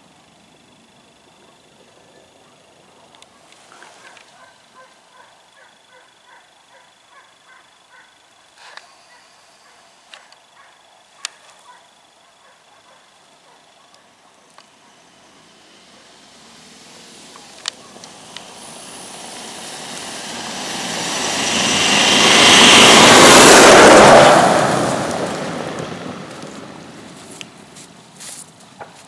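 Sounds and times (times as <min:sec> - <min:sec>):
vehicle passing close by: 0:14.8 - 0:27.9.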